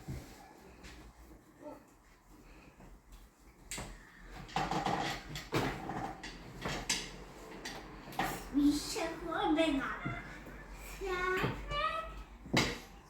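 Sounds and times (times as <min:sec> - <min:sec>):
sharp knocks and clatters: 0:03.7 - 0:08.6.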